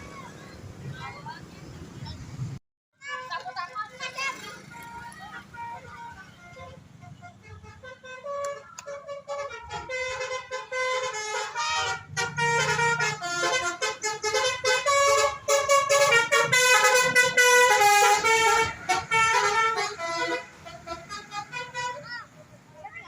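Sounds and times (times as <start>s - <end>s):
bus horn playing a tune: 4.0s - 22.1s.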